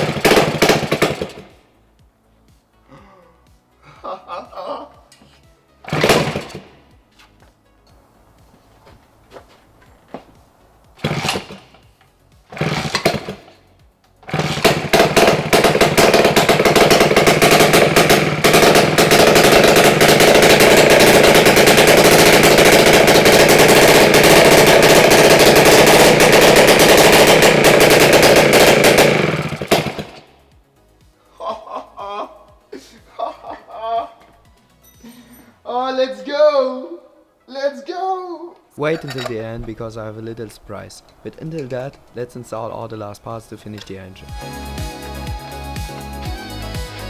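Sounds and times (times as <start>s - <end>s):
scooter engine starting and running: 0.0s - 2.0s, 5.8s - 7.5s, 8.4s - 30.6s, 38.9s - 40.0s, 43.2s - 47.0s.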